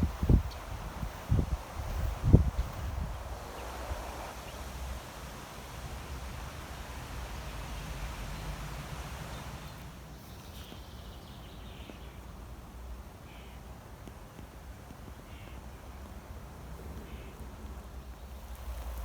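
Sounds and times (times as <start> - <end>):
wind buffeting microphone: 0.0 - 4.4
leaves rustling: 18.2 - 19.0.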